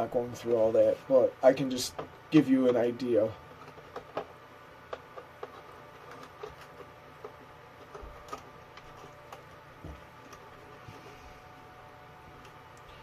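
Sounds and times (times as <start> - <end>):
clicks and taps of plastic parts: 1.8 - 2.9, 3.5 - 10.5.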